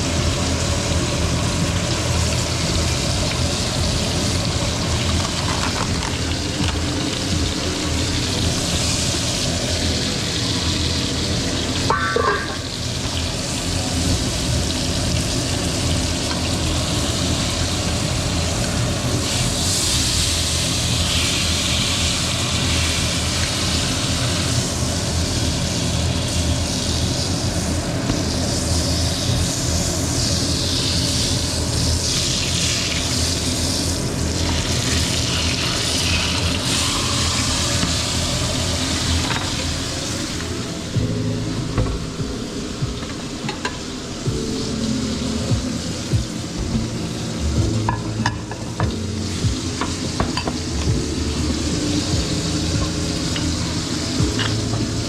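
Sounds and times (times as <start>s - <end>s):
steak sizzling in a pan: 0.0s - 41.0s, 43.2s - 55.0s
low steady hum: 33.6s - 55.0s.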